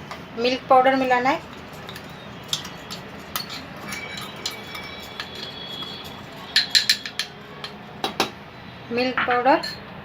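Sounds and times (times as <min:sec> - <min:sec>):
metal spoon scraping a pan: 0:00.0 - 0:08.1
sharp spoon taps: 0:01.8 - 0:08.4.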